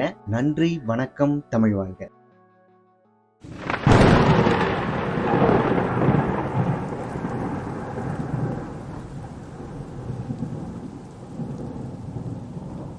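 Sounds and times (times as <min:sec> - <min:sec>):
steady rain: 0:03.4 - 0:12.9
thunder crack and rumble: 0:03.5 - 0:12.9.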